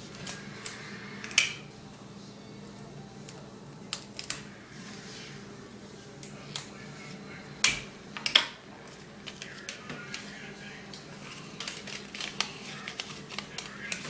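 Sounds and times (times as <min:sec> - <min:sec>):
paper and sticky tape crackling: 0:03.2 - 0:04.5, 0:08.8 - 0:14.0.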